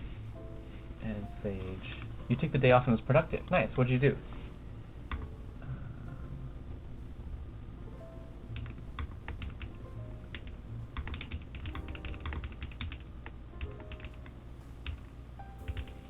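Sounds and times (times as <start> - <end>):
soft background music: 0.0 - 16.0
mechanical keyboard clicks: 11.0 - 13.0, 13.6 - 14.1.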